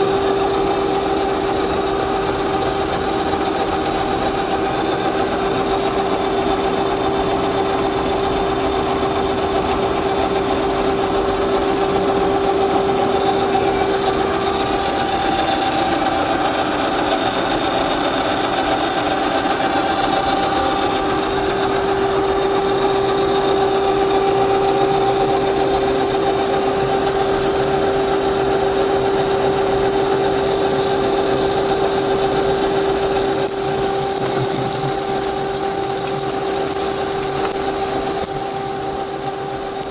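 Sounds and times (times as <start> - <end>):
machine tool motor whine: 20.2 - 39.9
rough metal cutting noise: 21.5 - 39.9.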